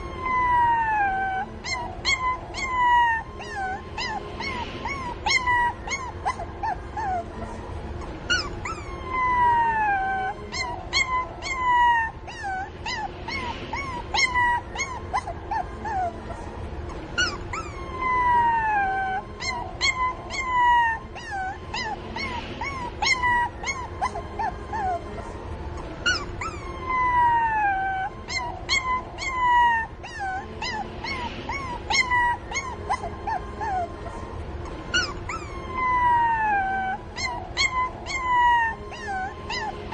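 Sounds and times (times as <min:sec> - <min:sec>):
puppies whimpering and yipping: 0:00.0 - 0:39.9.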